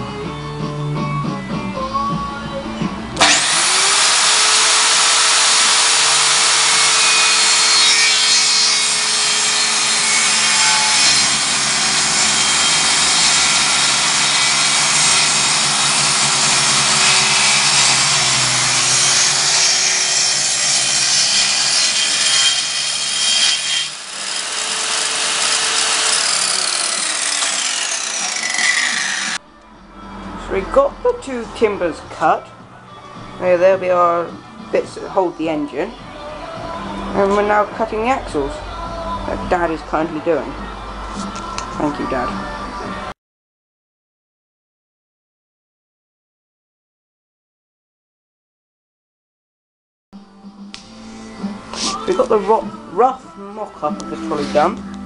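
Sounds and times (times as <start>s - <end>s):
electric power saw cutting timber: 3.2s - 29.4s.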